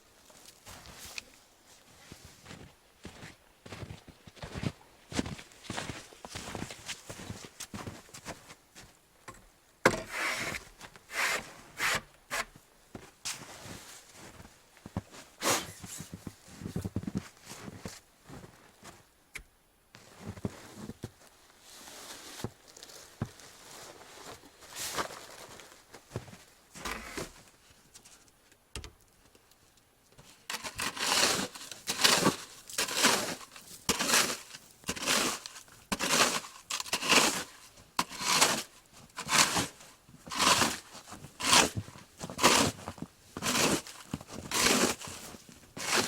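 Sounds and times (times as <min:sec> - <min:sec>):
footsteps crunching in snow: 0:00.2 - 0:09.0, 0:12.9 - 0:19.1, 0:20.0 - 0:27.7, 0:30.5 - 0:46.0
rustling: 0:20.0 - 0:28.5, 0:30.2 - 0:46.0.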